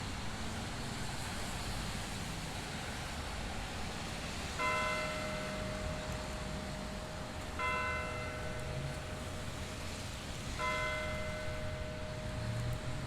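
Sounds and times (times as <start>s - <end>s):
clock tower bell striking: 4.6s - 13.0s.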